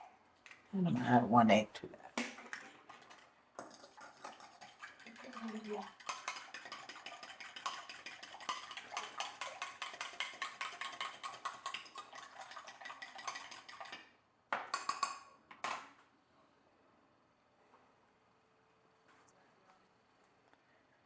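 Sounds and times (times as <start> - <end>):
utensil beating eggs in bowl: 0.9 - 14.1.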